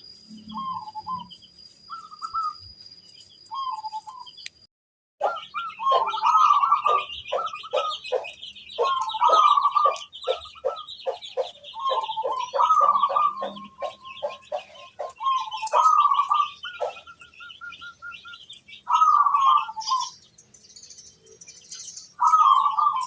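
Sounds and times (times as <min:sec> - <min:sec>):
small birds chirping: 0:00.0 - 0:23.0
dove cooing: 0:00.3 - 0:01.3, 0:05.2 - 0:20.2, 0:22.1 - 0:23.0.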